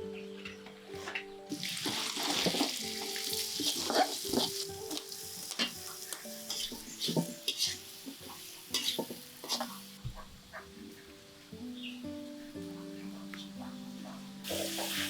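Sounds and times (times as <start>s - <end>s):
soft instrumental music: 0.0s - 15.0s
food sizzling in oil: 1.5s - 12.3s, 13.8s - 15.0s.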